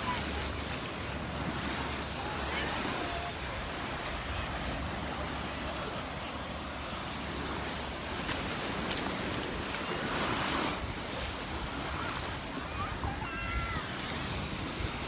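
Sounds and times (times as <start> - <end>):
surf washing onto beach: 0.0 - 15.0.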